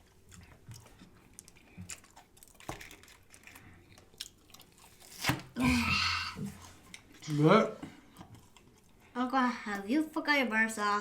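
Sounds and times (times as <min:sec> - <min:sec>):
chewing and biting food: 0:00.0 - 0:05.3.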